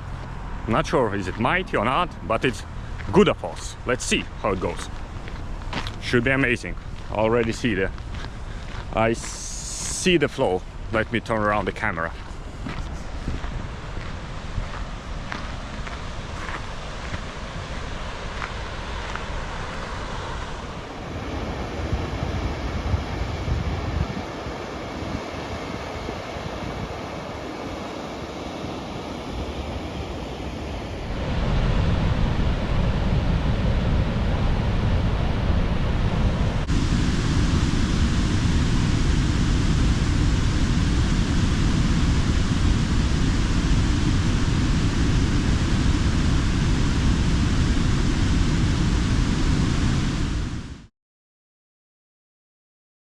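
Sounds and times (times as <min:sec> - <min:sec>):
waterfall roaring: 0:11.0 - 0:32.3
wind on microphone: 0:12.1 - 0:50.9.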